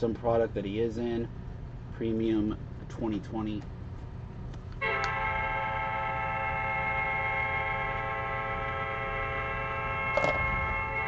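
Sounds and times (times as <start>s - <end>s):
low background hum: 0.0s - 11.0s
steady held chord: 4.8s - 11.0s.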